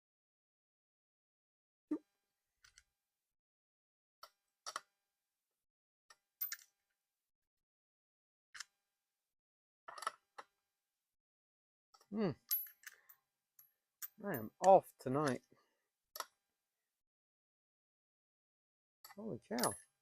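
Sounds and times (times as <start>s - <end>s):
metal hand tools clinking: 19.5s - 19.8s.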